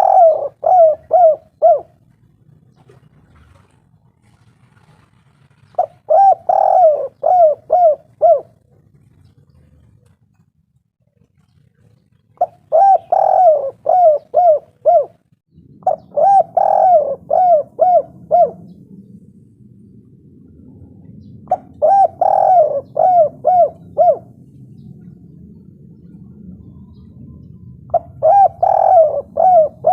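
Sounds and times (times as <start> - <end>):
dove cooing: 0.0 - 3.7, 5.6 - 10.2, 11.4 - 19.1, 20.9 - 29.9.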